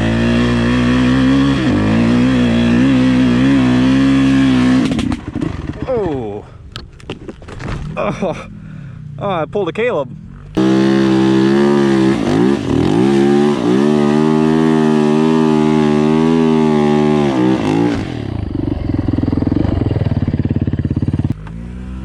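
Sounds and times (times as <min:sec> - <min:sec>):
dirt bike engine revving: 0:00.0 - 0:06.2, 0:10.2 - 0:22.0.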